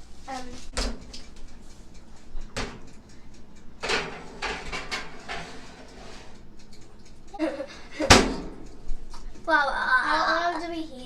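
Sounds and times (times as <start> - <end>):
cake pan knocking in oven: 3.8 - 5.7
pan clattering: 3.8 - 6.0.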